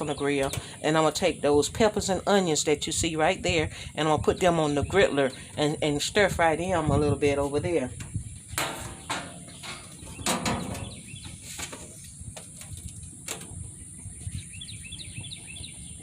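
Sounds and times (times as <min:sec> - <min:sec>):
small birds chirping: 0:00.0 - 0:16.0
utensils knocking at a grill: 0:08.5 - 0:11.0.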